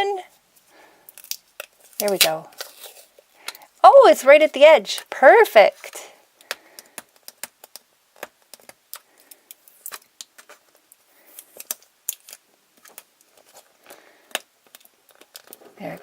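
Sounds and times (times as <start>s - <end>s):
plastic egg clicking and crackling: 1.0s - 3.8s, 5.8s - 16.0s.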